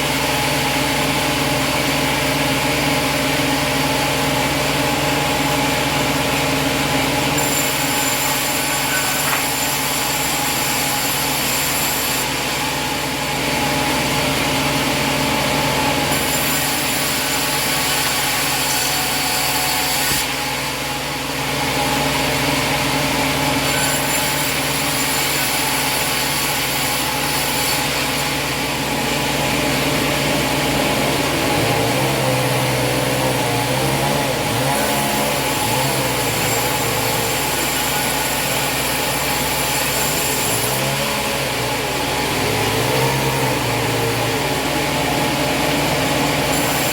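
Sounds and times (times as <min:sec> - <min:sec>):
sawmill engine running: 0:00.0 - 0:46.9
saw blade hiss: 0:07.4 - 0:13.1, 0:16.0 - 0:20.8, 0:23.6 - 0:29.8, 0:31.0 - 0:45.0, 0:46.1 - 0:46.9.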